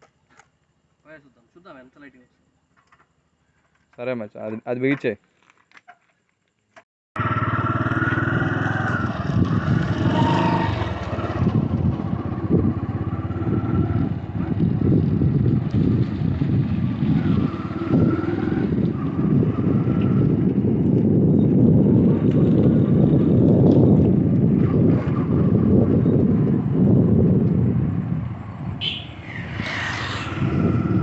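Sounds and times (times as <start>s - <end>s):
motorcycle engine running: 7.2s - 29.2s.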